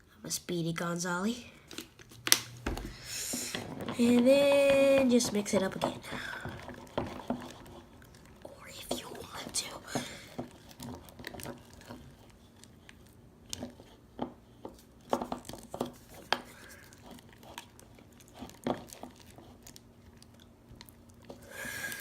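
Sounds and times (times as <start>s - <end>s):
sticky slime squelches: 0.7s - 14.1s
stirrer knocking bowl: 2.9s - 12.0s.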